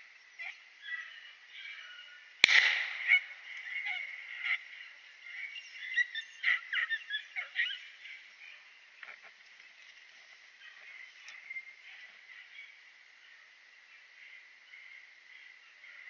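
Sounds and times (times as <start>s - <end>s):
beagles baying: 0.4s - 9.9s
gunshot: 2.4s - 3.3s.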